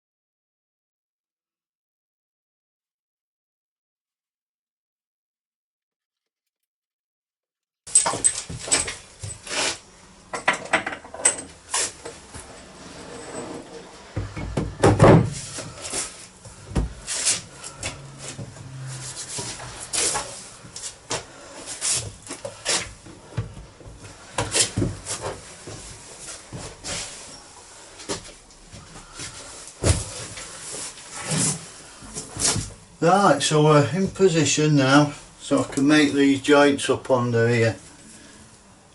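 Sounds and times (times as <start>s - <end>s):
plumbing parts knocking and scraping: 10.3s - 26.6s.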